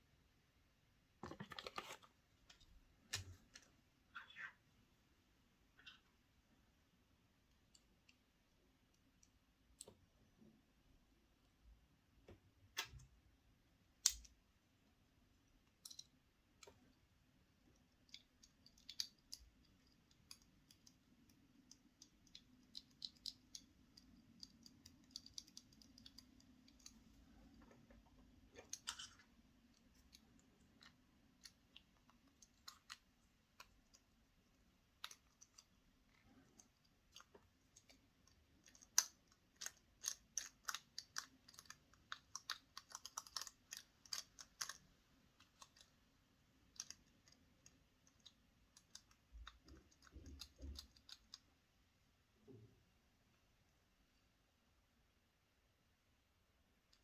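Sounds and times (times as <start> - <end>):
plastic toy parts clicking: 17.9 - 27.0, 35.0 - 45.9, 46.6 - 51.5.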